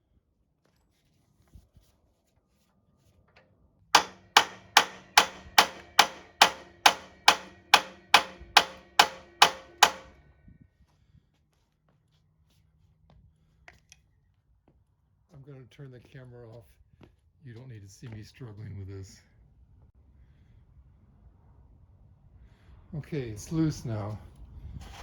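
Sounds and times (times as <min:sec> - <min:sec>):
hammer striking metal: 0:04.0 - 0:10.2.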